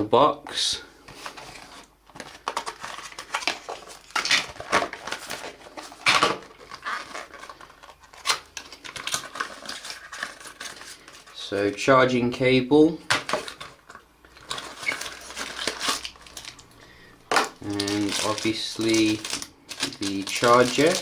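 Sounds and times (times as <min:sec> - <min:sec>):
cardboard and plastic rustling: 0:01.0 - 0:11.9, 0:13.1 - 0:16.7, 0:17.3 - 0:21.0.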